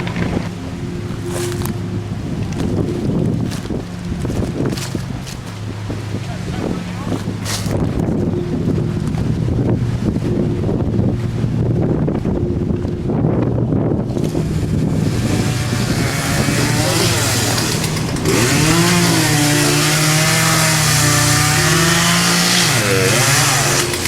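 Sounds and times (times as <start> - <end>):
chainsaw engine revving: 0.0 - 1.6, 14.1 - 24.0.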